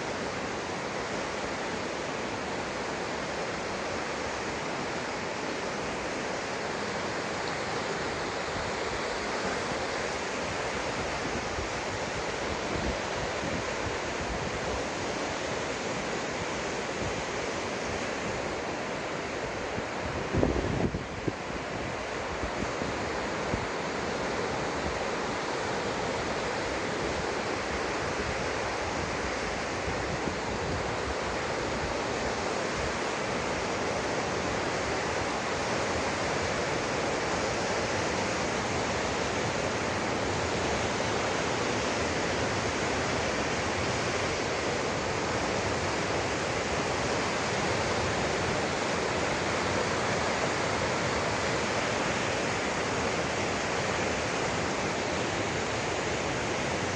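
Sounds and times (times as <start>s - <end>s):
waterfall roaring: 0.0s - 56.9s.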